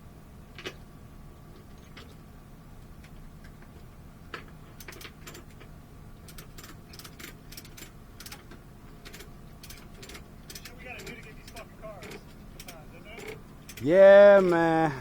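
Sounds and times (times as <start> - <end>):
low engine hum: 0.0 - 15.0
sharp clicks and ticks: 9.1 - 13.8.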